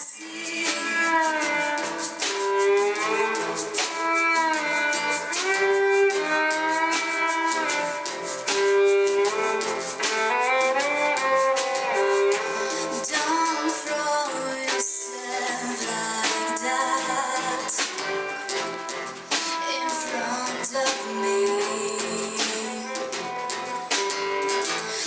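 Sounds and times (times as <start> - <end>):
person singing slow melody: 0.0 - 2.0
strummed acoustic guitar: 0.0 - 25.0.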